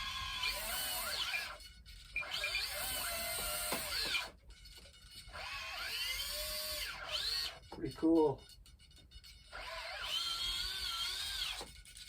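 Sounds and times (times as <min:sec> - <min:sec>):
electric motors whining: 0:00.0 - 0:12.0.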